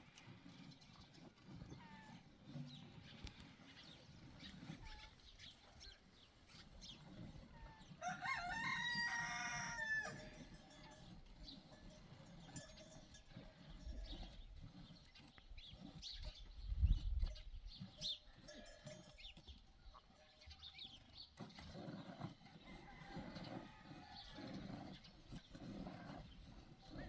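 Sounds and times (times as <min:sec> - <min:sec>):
rhythmic swishing of milking: 0:00.0 - 0:27.0
small birds chirping: 0:00.2 - 0:08.1, 0:10.8 - 0:22.3.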